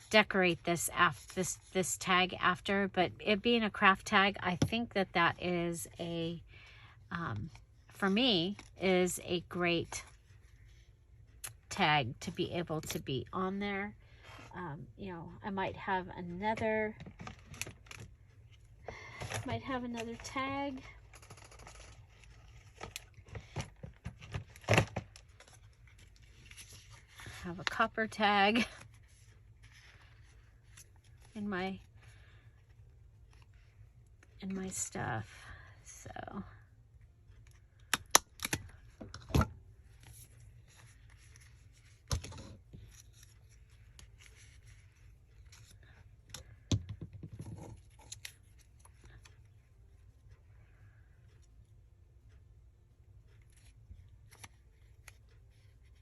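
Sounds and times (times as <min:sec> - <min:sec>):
paper rustling: 0:21.1 - 0:24.7.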